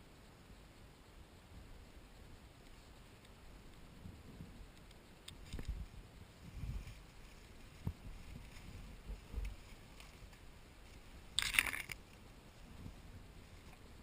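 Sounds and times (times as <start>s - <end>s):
soft low thumps: 5.4s - 11.3s
scraping rustle: 5.4s - 14.0s.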